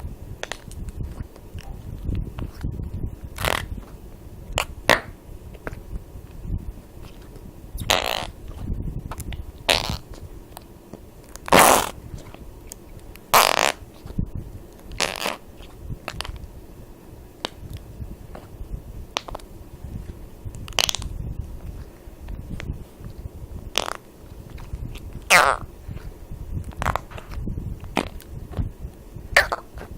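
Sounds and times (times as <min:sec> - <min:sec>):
short fart noises: 0:07.8 - 0:08.3, 0:09.7 - 0:10.0, 0:11.5 - 0:12.0, 0:13.4 - 0:13.8, 0:25.3 - 0:25.7, 0:29.4 - 0:29.7.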